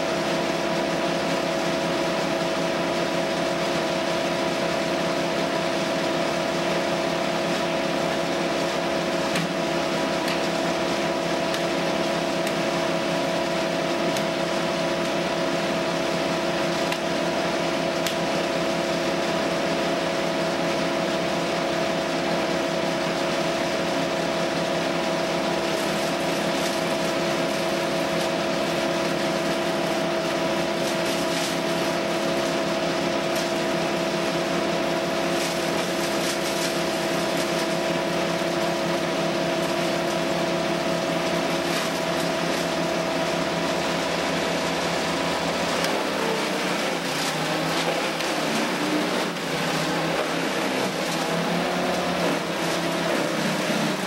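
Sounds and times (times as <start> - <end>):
engine droning steadily: 0.0 - 54.0.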